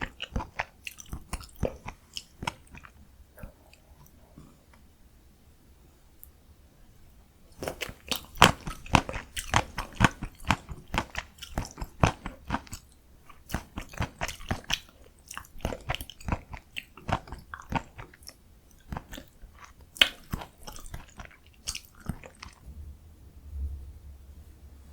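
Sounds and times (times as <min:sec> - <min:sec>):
person chewing noodles: 0:00.0 - 0:04.8, 0:07.5 - 0:22.6.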